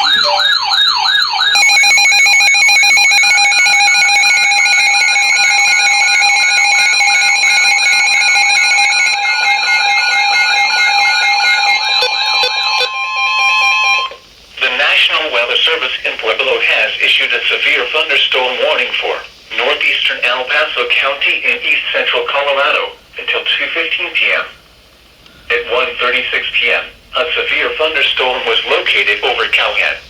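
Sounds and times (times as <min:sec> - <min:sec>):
warbling electronic siren: 0:00.0 - 0:14.2
two-tone alert signal: 0:07.6 - 0:14.2.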